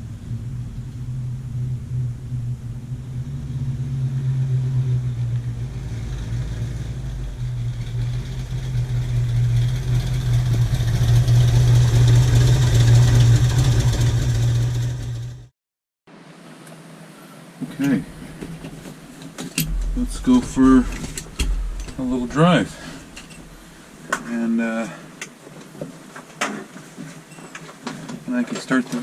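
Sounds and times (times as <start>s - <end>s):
car engine running: 0.0s - 15.5s, 19.6s - 24.0s.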